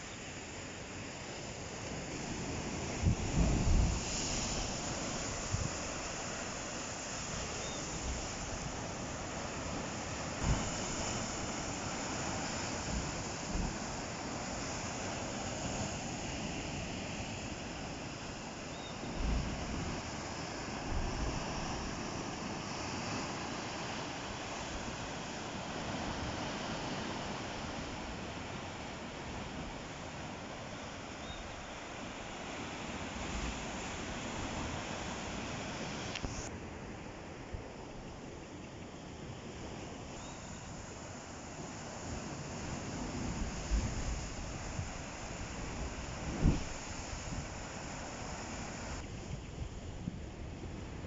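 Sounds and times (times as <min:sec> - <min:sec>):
ocean surf breaking: 0:00.0 - 0:37.5, 0:39.2 - 0:49.2
wind buffeting microphone: 0:02.1 - 0:24.0, 0:42.1 - 0:51.0.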